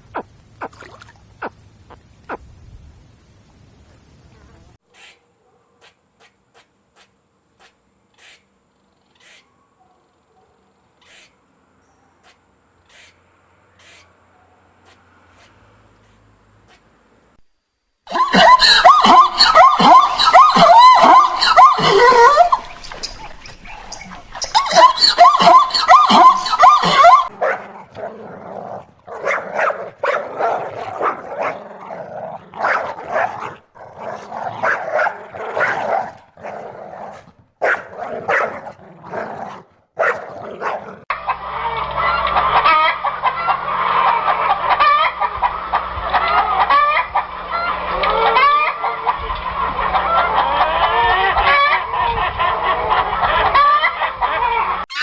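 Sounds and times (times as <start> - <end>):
poultry calling: 24.7 - 41.0.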